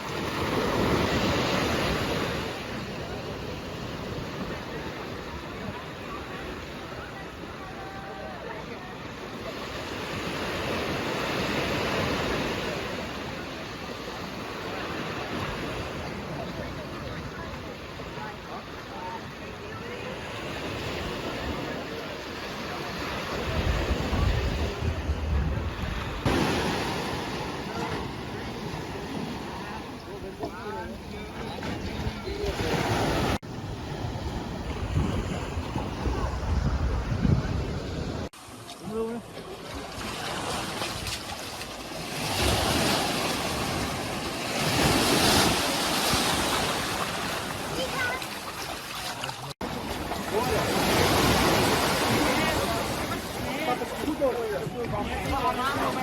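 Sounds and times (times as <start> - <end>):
sea waves washing onto beach: 0.0 - 56.0
wind buffeting microphone: 23.3 - 26.3, 30.4 - 38.3.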